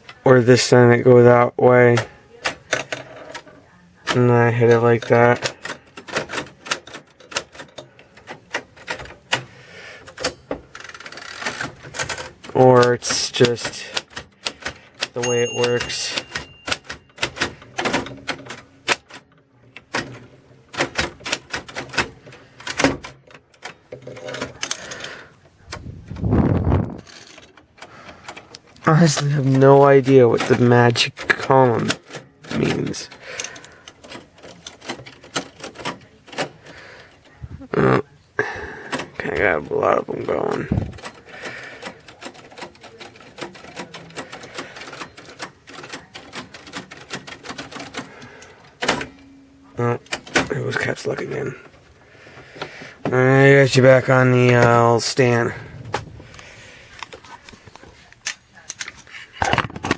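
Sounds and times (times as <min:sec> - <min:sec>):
typewriter rattling: 0:04.1 - 0:25.2, 0:27.0 - 0:37.2, 0:38.9 - 0:49.2
typewriter keys clacking: 0:10.1 - 0:19.2, 0:19.9 - 0:25.2, 0:29.1 - 0:37.1, 0:40.5 - 0:49.1.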